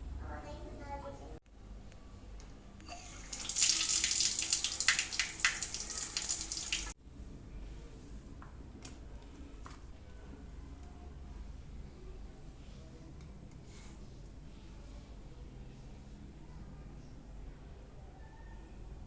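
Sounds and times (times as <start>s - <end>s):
water running from a tap: 2.9s - 7.0s.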